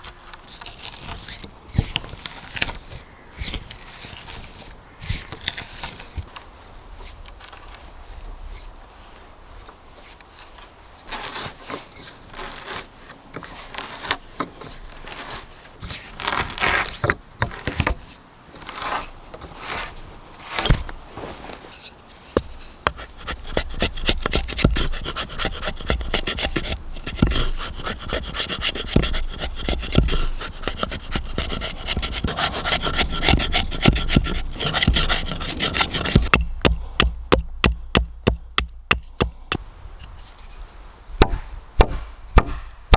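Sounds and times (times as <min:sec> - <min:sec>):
hand tool rasping wood: 0:11.1 - 0:21.0, 0:22.3 - 0:40.2.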